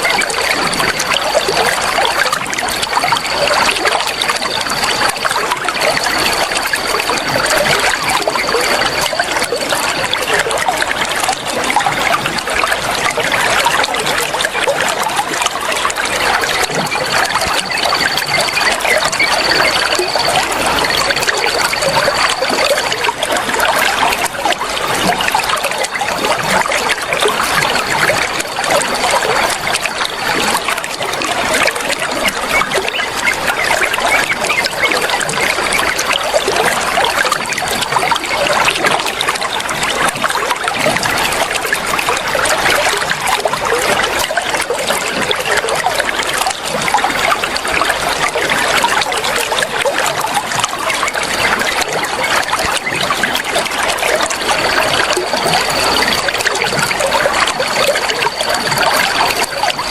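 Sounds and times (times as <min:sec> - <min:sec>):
flowing water splashing: 0:00.0 - 0:59.9.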